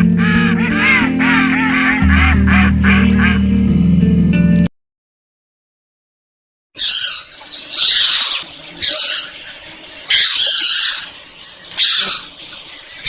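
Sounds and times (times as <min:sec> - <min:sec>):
animal harsh hissing calls: 0:10.1 - 0:12.6.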